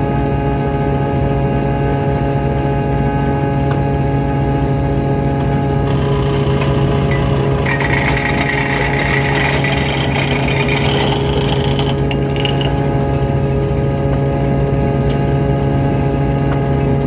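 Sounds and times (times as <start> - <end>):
grinding whine: 4.2 - 16.7
machinery drone with rattling: 4.4 - 17.0.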